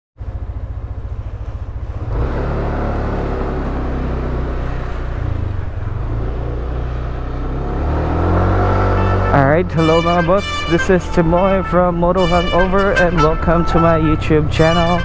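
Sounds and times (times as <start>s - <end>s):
scooter engine revving: 0.3s - 10.0s.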